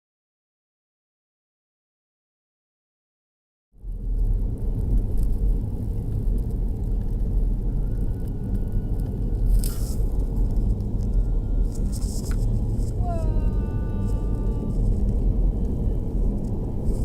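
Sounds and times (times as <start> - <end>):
motor vehicle engine rumbling: 3.8 - 17.0
brief hiss: 9.5 - 10.0.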